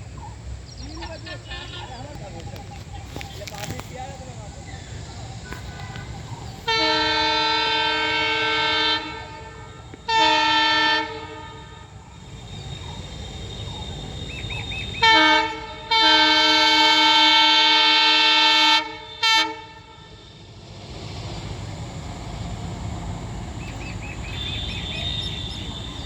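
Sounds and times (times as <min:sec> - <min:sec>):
running train rumble: 0:00.0 - 0:26.0
locomotive horn blasts: 0:05.4 - 0:12.2, 0:14.8 - 0:20.6, 0:24.2 - 0:26.0.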